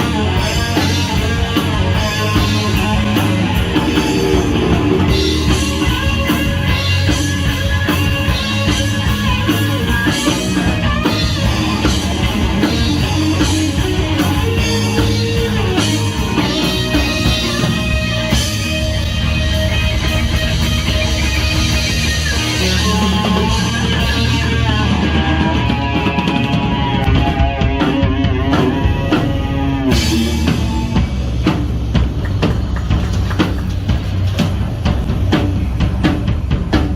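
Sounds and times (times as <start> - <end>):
live rock band playing: 0.0 - 36.9.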